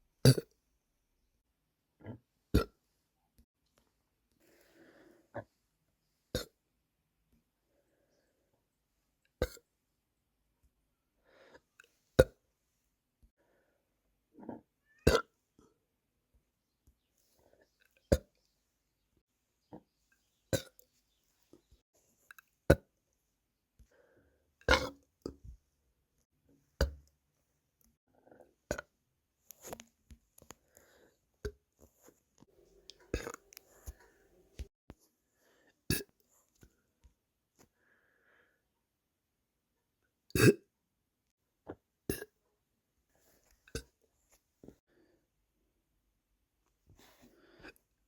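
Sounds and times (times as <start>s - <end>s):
person burping: 0.2s - 0.6s, 2.0s - 2.8s, 6.4s - 6.6s, 14.4s - 15.4s, 24.6s - 25.4s, 35.9s - 36.2s, 40.4s - 40.7s.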